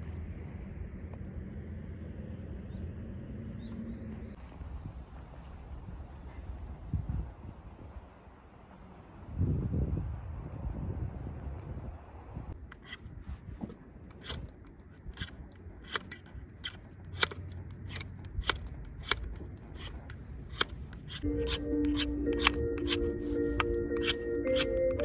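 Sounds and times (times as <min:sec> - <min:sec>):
gentle music: 0:21.2 - 0:25.0.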